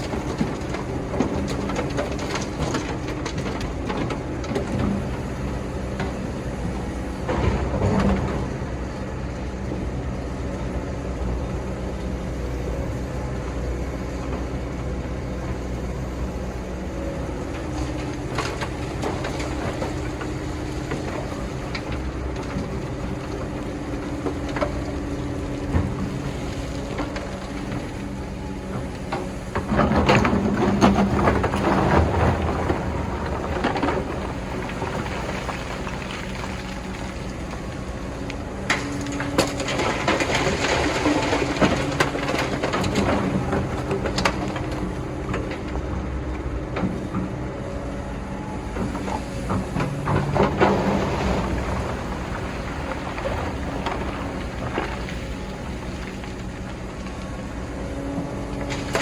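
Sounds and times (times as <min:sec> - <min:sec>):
excavator diesel engine: 0:00.0 - 0:59.0
bucket grinding and rattling in sand: 0:29.2 - 0:36.6, 0:48.9 - 0:55.9.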